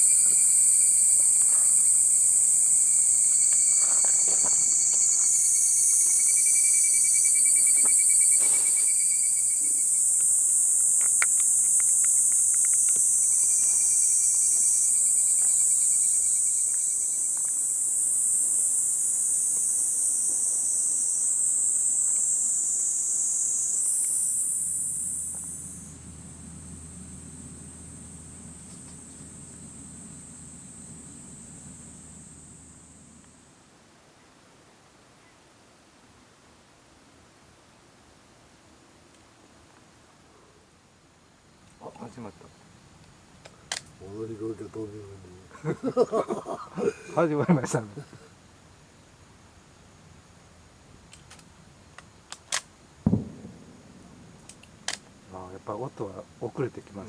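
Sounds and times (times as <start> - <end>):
insects trilling: 0.0 - 34.4, 40.2 - 57.0
low hum: 24.1 - 34.0, 53.1 - 57.0
faint clicks: 43.0 - 44.0, 51.1 - 53.8, 54.4 - 55.1.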